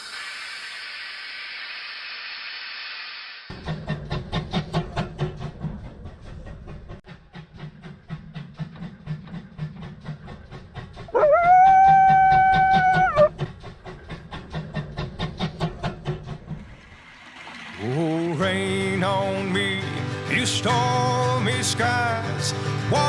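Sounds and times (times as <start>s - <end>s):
train wheels clicking and rumbling: 3.5s - 11.2s, 11.9s - 23.0s
train whistle: 11.2s - 13.3s.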